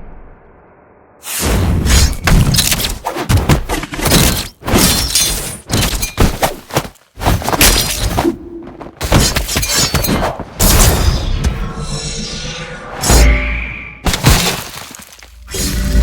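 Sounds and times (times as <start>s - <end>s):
debris shattering and breaking: 14.0s - 15.5s.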